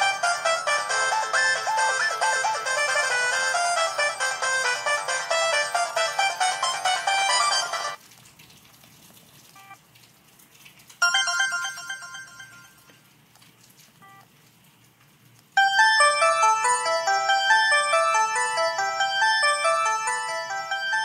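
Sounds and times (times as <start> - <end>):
phone ringtone melodies: 0.0 - 8.0, 11.0 - 13.0, 15.6 - 21.0.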